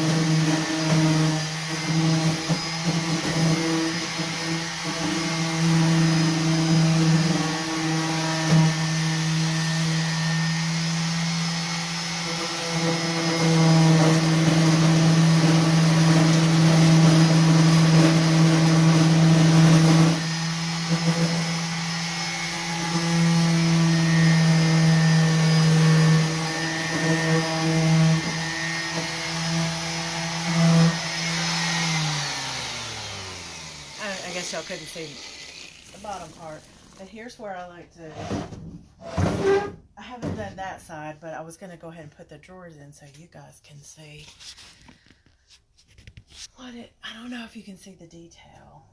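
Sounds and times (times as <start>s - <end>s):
electric orbital sander running: 0.0s - 37.1s.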